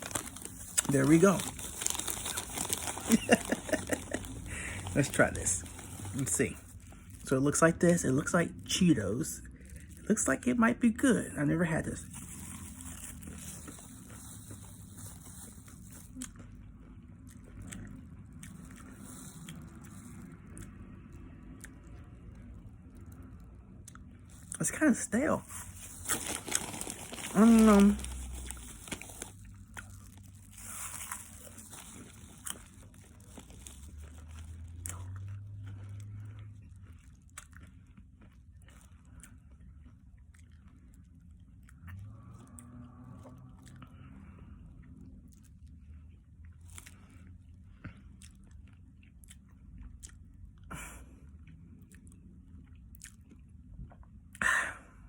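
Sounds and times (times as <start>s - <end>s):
bag crinkling: 0.0s - 7.3s, 11.7s - 16.3s, 18.5s - 20.2s, 24.3s - 35.1s
chewing crunchy popcorn: 0.0s - 54.5s.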